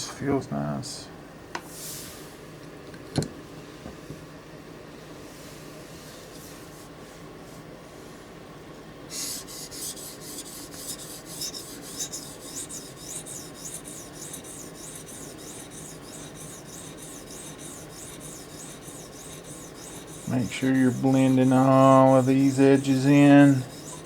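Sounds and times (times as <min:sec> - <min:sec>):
knife blade scraping sharpening stone: 0:09.8 - 0:21.4, 0:22.2 - 0:24.0.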